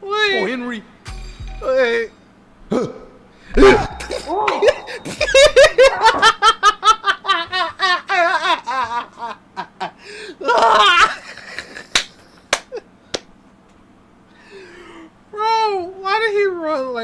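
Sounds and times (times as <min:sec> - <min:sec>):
man laughing hard: 0:03.6 - 0:12.0.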